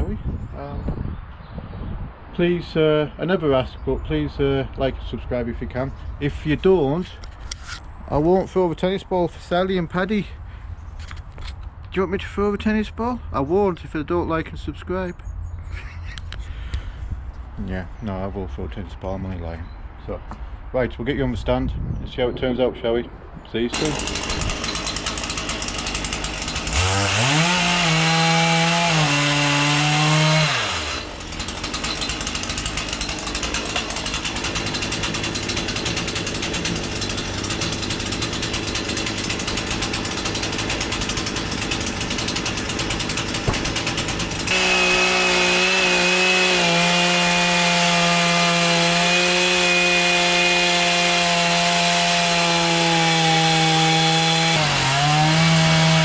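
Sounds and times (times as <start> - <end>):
chainsaw cutting wood: 23.7 - 56.0.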